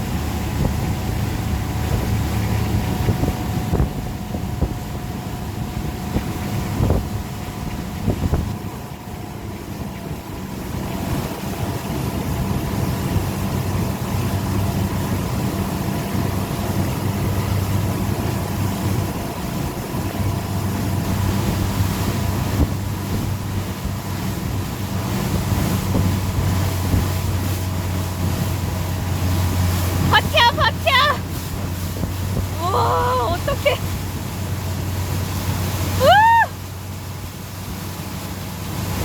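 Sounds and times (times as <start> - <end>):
boat engine drone: 0.0 - 39.0
water rushing past hull: 0.0 - 39.0
wind buffeting microphone: 0.0 - 39.0.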